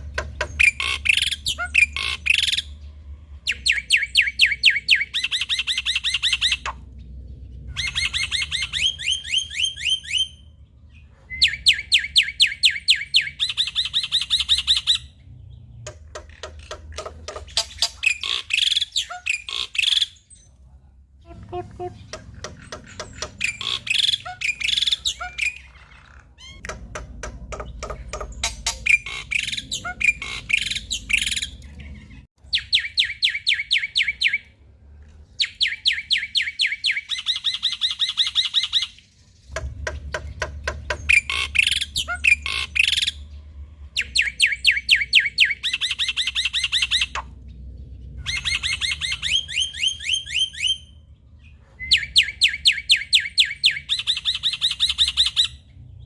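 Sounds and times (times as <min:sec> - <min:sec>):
starling singing: 0:00.0 - 0:02.8, 0:21.2 - 0:34.4.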